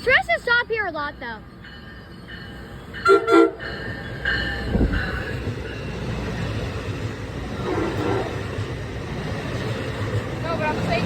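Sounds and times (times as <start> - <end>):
train low rumble: 0.0 - 11.0
train horn toots: 3.0 - 3.8, 7.6 - 8.5.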